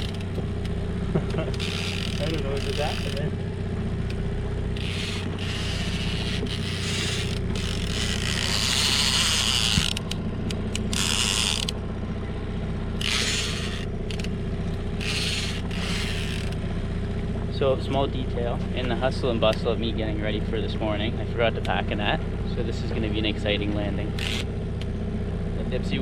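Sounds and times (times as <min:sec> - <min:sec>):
fishing reel ratcheting: 0:00.0 - 0:00.8, 0:01.4 - 0:03.3, 0:04.8 - 0:11.8, 0:13.0 - 0:14.3, 0:15.0 - 0:16.6, 0:24.2 - 0:24.5
boat motor hum: 0:00.0 - 0:26.0.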